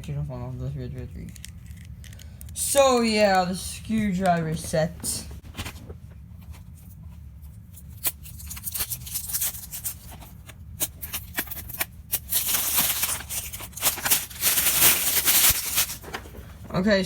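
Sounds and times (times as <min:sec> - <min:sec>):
packaging rustling rattle: 0:08.3 - 0:16.6.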